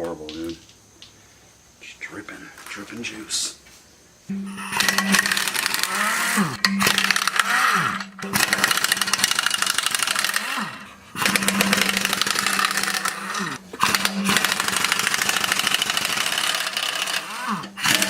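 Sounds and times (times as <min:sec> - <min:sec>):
pneumatic impact wrench hammering: 0:04.3 - 0:18.0.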